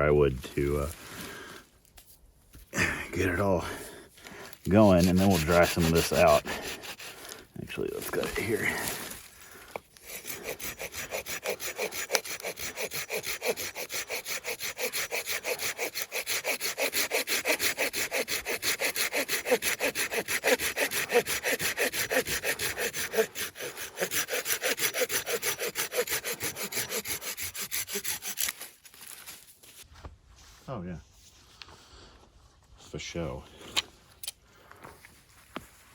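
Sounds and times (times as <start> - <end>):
hand saw cutting log: 4.6 - 9.2, 10.0 - 29.4.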